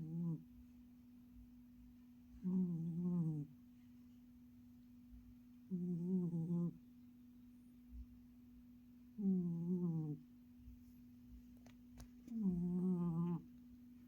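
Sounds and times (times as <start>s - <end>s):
cat snoring: 0.0s - 0.4s, 2.4s - 3.5s, 5.7s - 6.8s, 9.2s - 10.2s, 12.3s - 13.5s
steady low hum: 0.0s - 14.0s.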